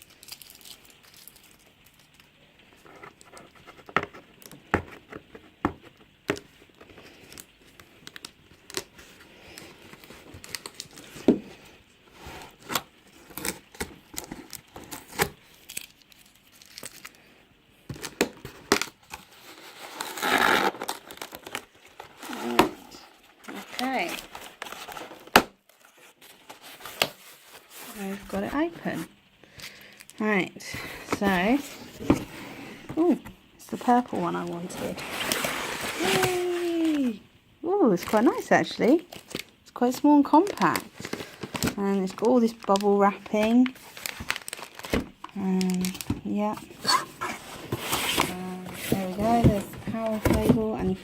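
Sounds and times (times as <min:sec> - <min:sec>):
cardboard box being opened: 0:18.0 - 0:29.1, 0:31.2 - 0:37.2, 0:43.7 - 0:51.0.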